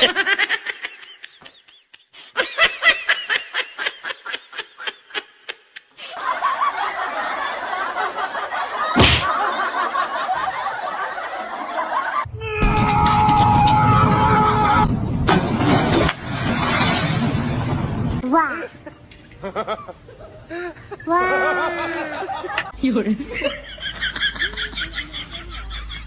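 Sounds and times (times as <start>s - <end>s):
person laughing: 18.7s - 22.7s.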